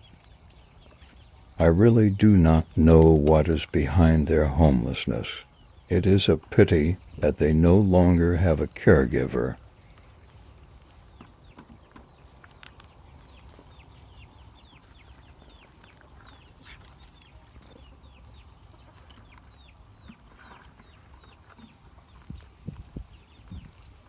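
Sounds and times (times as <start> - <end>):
bird peeping: 0.0 - 23.7.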